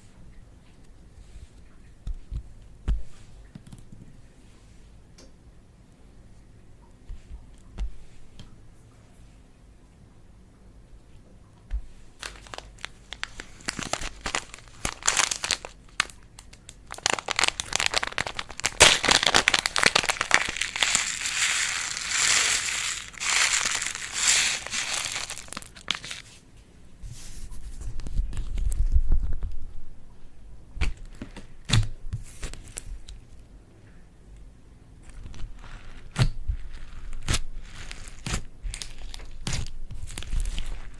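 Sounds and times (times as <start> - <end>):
slime squished by hand: 11.8 - 26.3, 35.1 - 40.9.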